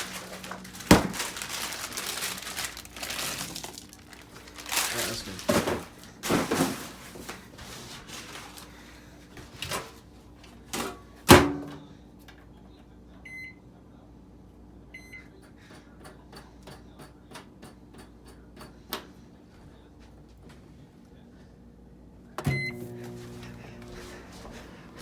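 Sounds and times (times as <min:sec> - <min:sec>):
microwave humming: 0:00.0 - 0:12.1, 0:13.1 - 0:14.0, 0:22.2 - 0:25.0
keypad beeps: 0:22.4 - 0:22.8
microwave door shutting: 0:22.4 - 0:23.7.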